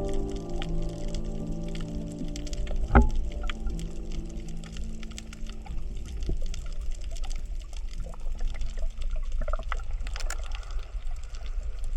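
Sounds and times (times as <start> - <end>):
musical tones: 0.0 - 7.1
coral reef crackle: 0.0 - 11.9
low rumble of water: 0.0 - 11.9.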